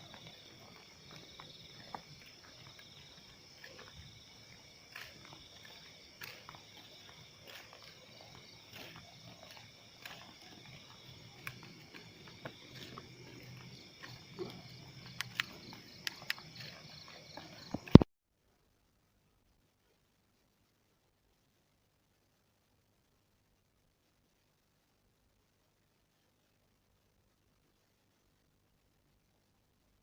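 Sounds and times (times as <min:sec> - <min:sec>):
night insects chirring: 0:00.0 - 0:18.0
sharp clicks and taps: 0:08.8 - 0:18.0.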